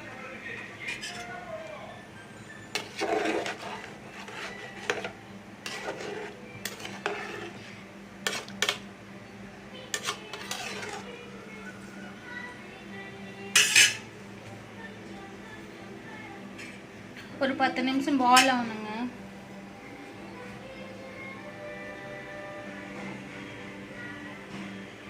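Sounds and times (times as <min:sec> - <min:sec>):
metal spoon scraping a pan: 0:00.8 - 0:01.4, 0:02.7 - 0:08.8, 0:09.9 - 0:11.2, 0:13.5 - 0:14.0.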